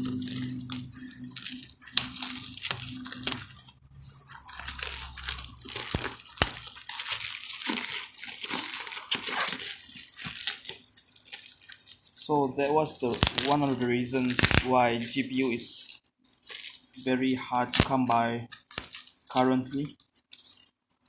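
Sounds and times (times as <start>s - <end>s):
low steady hum: 0.0s - 9.0s
bubble wrap crackling: 0.0s - 21.0s.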